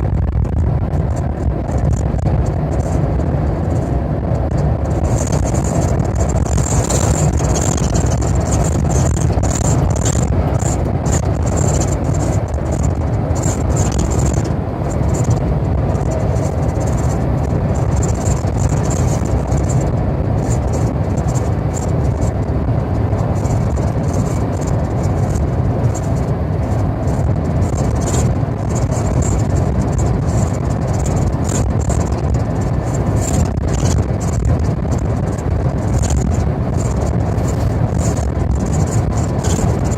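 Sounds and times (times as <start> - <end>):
car road and wind noise: 0.0 - 39.9
rain ticks and spatters: 4.5 - 16.2, 23.4 - 39.9.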